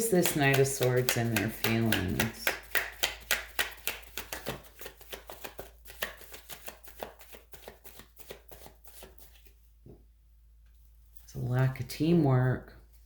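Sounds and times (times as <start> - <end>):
cards being shuffled: 0.0 - 9.6.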